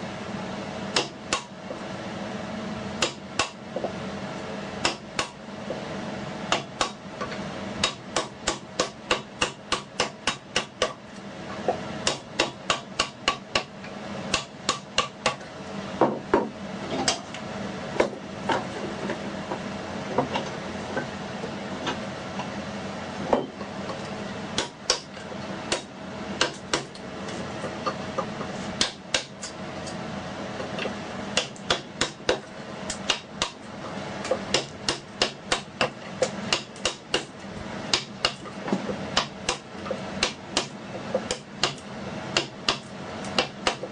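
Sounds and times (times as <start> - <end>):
wooden mallet striking chisel: 1.0 - 1.5, 4.8 - 5.4, 6.5 - 7.0, 7.8 - 10.9, 12.0 - 13.7, 24.6 - 25.1, 25.7 - 26.9, 28.8 - 29.3, 31.4 - 33.6, 34.3 - 37.3, 37.9 - 39.6, 40.2 - 41.8, 42.4 - 43.9.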